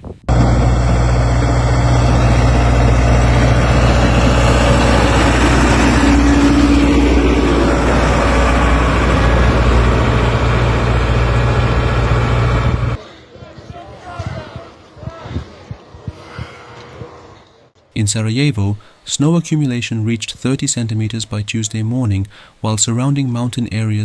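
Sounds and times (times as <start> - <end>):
vehicle engine running: 0.3 - 13.0.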